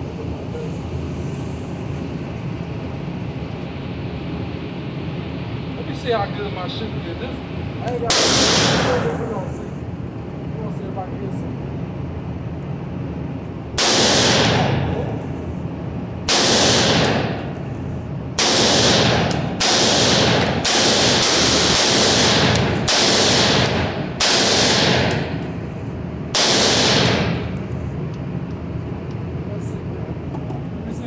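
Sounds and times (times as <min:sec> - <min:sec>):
rifle shots: 0:08.1 - 0:09.2, 0:13.8 - 0:14.9, 0:16.3 - 0:17.5, 0:18.4 - 0:25.4, 0:26.4 - 0:27.7.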